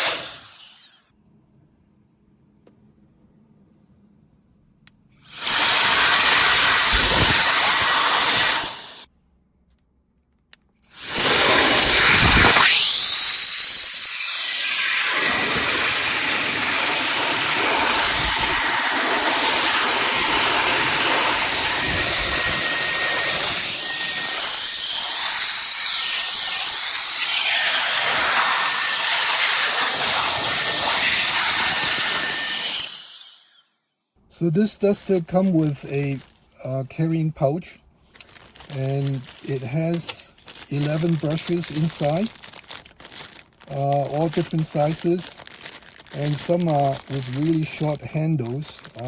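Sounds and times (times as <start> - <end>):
air duster blowing: 0.0 - 0.9, 5.2 - 9.1, 10.9 - 33.6, 38.2 - 49.0.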